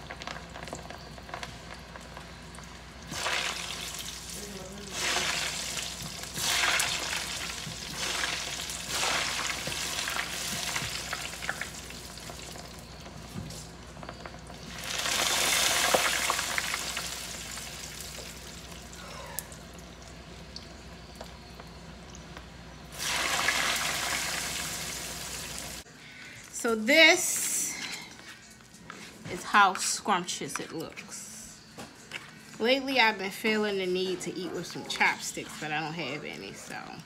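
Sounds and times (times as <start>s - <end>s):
fries sizzling in hot oil: 0.0s - 25.9s.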